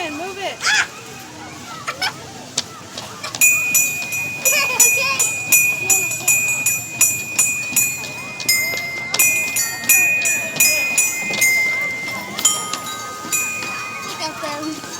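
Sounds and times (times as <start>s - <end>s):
metal chimes struck by hand: 3.4s - 14.9s.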